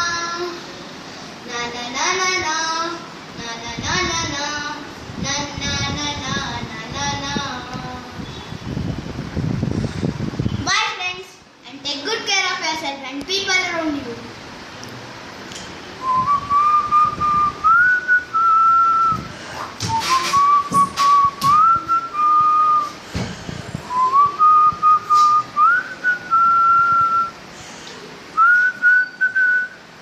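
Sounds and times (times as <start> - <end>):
person whistling a tune: 16.0 - 23.0, 23.9 - 27.4, 28.4 - 29.8.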